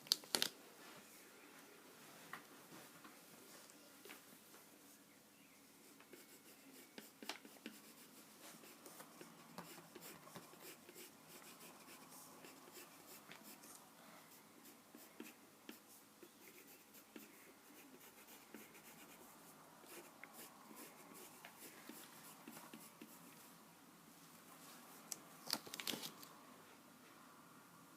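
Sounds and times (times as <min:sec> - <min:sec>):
pencil scratching on paper: 0:05.8 - 0:13.7, 0:14.3 - 0:23.4.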